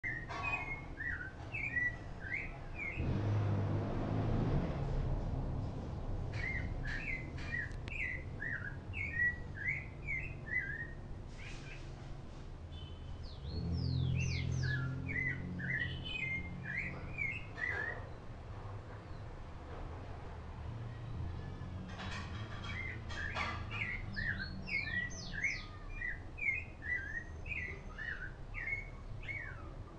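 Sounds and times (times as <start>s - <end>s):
songbird chirping: 0.0s - 3.6s, 6.3s - 12.0s, 12.7s - 18.4s, 21.1s - 29.9s.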